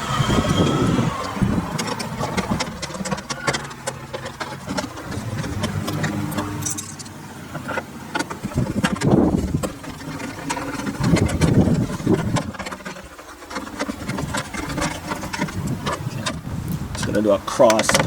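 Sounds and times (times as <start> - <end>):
short whirring hum: 0.0 - 3.4.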